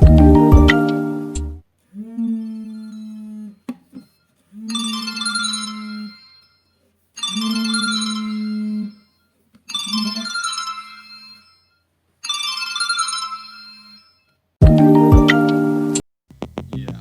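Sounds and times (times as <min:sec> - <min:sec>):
steady low tone: 0:16.3 - 0:17.0.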